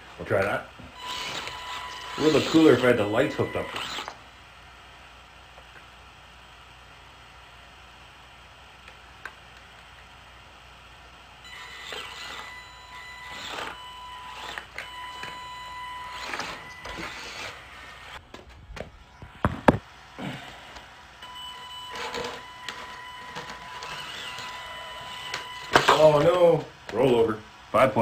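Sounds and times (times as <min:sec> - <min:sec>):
electric motor whine: 0:00.0 - 0:04.8, 0:11.4 - 0:28.0.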